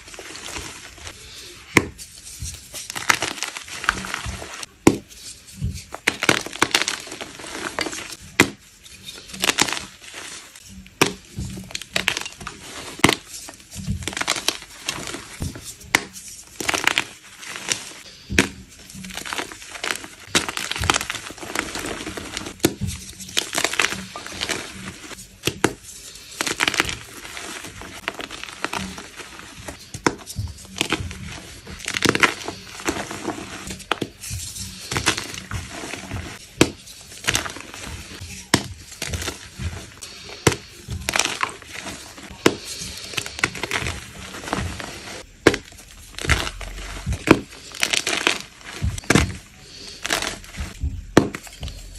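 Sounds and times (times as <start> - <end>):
chalk blocks crunching: 0.0 - 51.9.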